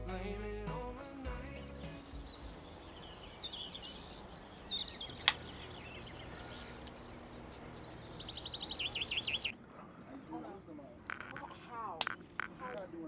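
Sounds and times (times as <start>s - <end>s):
rapid chirping trill: 0.0s - 9.6s
low outdoor background hum: 0.0s - 13.0s
songbirds chirping: 0.0s - 13.0s
sharp click: 5.2s - 5.4s.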